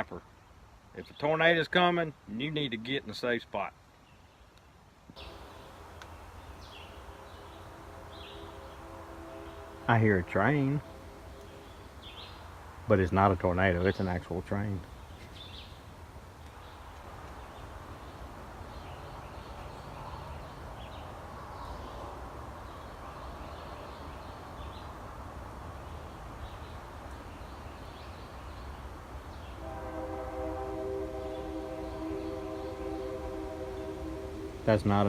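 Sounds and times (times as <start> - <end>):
train horn chord: 5.2 - 12.6, 29.5 - 35.0
train rumbling: 5.2 - 14.9, 28.9 - 35.0.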